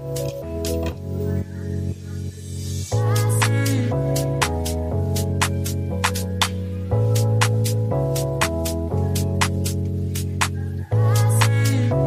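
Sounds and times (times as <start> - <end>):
held synth chords: 0.0 - 12.0
steady beat: 3.0 - 11.9.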